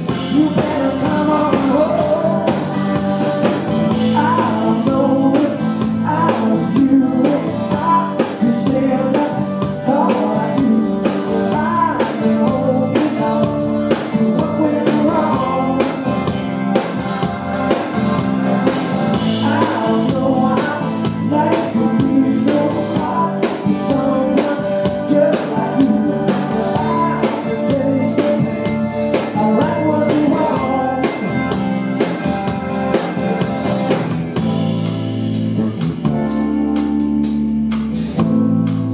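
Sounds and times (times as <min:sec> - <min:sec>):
person singing: 0:00.0 - 0:17.0, 0:19.1 - 0:32.0
drums: 0:00.0 - 0:38.9
electric guitar: 0:00.0 - 0:38.9.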